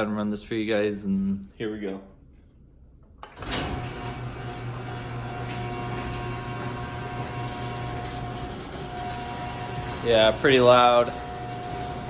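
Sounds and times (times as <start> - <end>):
garage door opener click: 3.2 - 12.0
garage door opener motor hum: 3.2 - 12.0.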